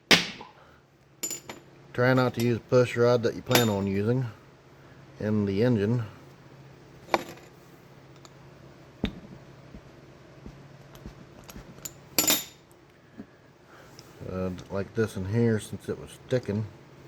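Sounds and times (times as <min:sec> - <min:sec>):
metal parts clattering: 0:01.2 - 0:01.6.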